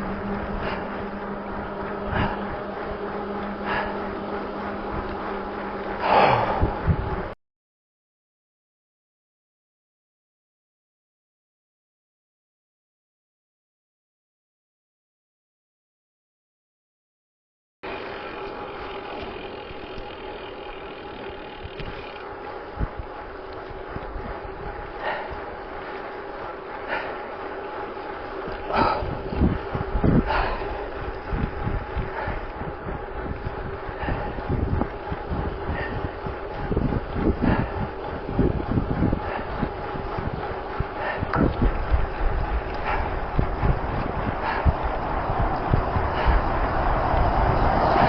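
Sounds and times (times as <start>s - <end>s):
bicycle tyres rolling on road: 0.0s - 7.4s, 17.8s - 48.0s
cyclist heavy breathing: 0.0s - 7.4s, 17.9s - 48.0s
steady low hum: 0.0s - 7.4s, 17.8s - 48.0s
bicycle freehub ratcheting: 17.9s - 47.7s.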